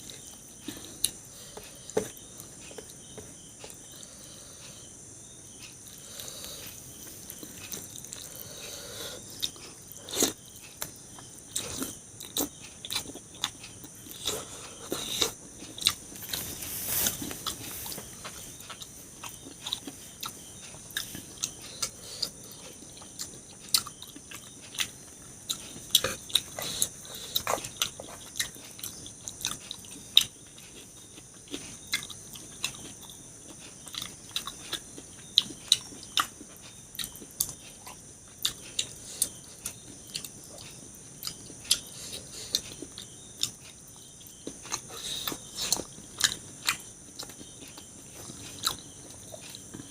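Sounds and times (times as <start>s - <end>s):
chewing and mouth smacks: 18.3s - 49.9s.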